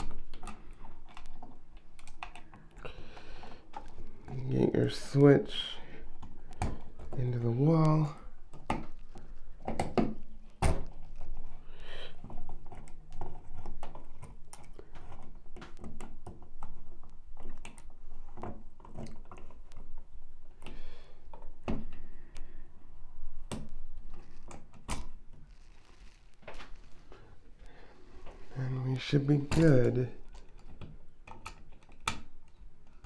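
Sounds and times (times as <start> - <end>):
wires scraping into electrical box: 24.0 - 32.2.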